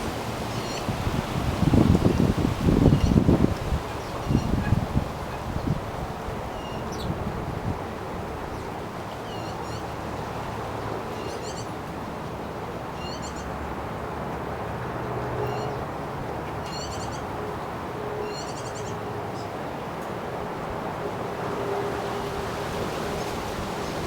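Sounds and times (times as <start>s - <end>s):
wind noise: 0.0s - 8.8s.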